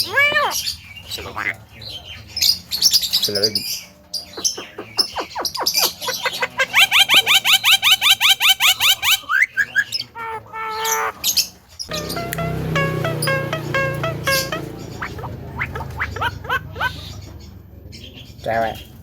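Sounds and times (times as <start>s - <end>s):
bird whistling calls: 4.4s - 10.1s.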